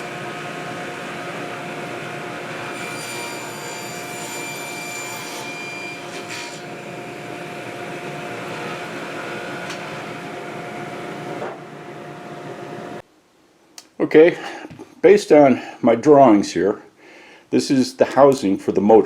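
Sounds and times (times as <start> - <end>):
noisy hiss: 11.6 - 19.0.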